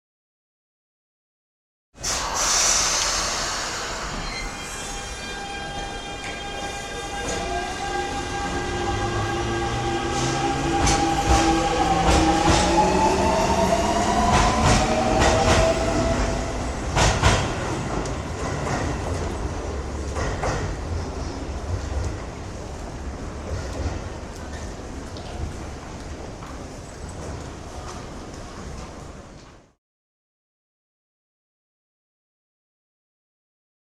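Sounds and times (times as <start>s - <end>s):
train air hiss: 2.0s - 5.2s.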